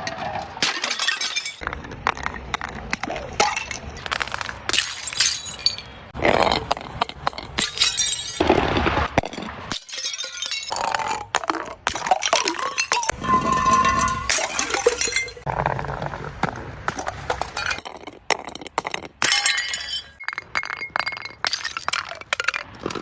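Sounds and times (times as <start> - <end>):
glass bottles shattering: 0.2 - 1.6, 3.4 - 6.1, 7.4 - 15.5, 17.6 - 23.0
clinking glass shards: 0.6 - 1.6, 7.6 - 8.4, 9.3 - 11.2, 12.2 - 15.5, 19.2 - 22.7.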